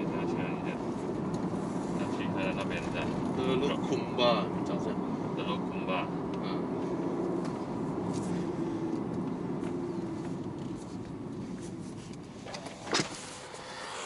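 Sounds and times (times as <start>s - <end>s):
car engine cruising: 0.0s - 14.0s.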